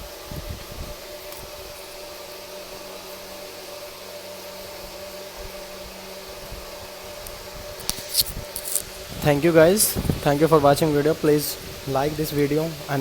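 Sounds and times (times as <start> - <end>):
background hum and hiss: 0.0 - 13.0
faint low thuds: 9.1 - 12.5.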